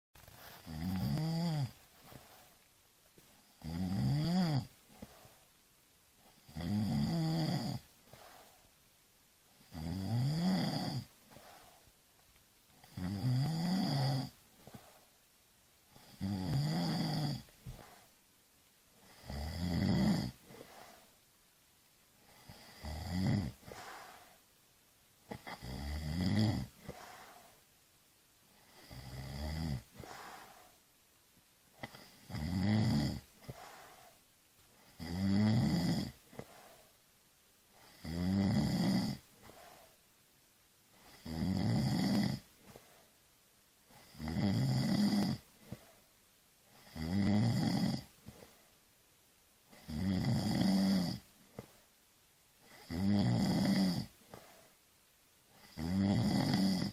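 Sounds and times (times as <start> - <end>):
quiet breath: 0.2 - 49.0, 49.6 - 56.9
person snoring: 0.3 - 2.5, 3.5 - 5.3, 6.3 - 8.6, 9.6 - 11.8, 12.8 - 15.0, 15.9 - 18.1, 19.0 - 21.1, 22.2 - 24.4, 25.3 - 27.6, 28.6 - 30.8, 31.8 - 34.2, 34.8 - 36.9, 37.8 - 40.0, 41.0 - 42.8, 43.9 - 45.9, 46.7 - 48.5, 49.7 - 51.2, 52.7 - 54.5, 55.6 - 56.9.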